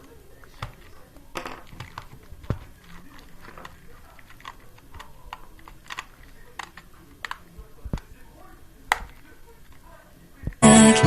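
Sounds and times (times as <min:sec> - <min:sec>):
clicks and taps handling a phone: 0:08.9 - 0:09.8
music: 0:10.6 - 0:11.0.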